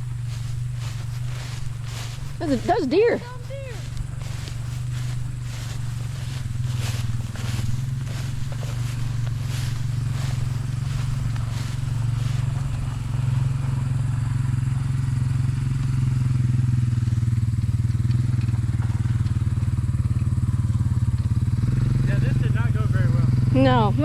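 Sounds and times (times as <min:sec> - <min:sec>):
short rustles: 0:00.0 - 0:13.7
small engine humming: 0:00.0 - 0:24.0.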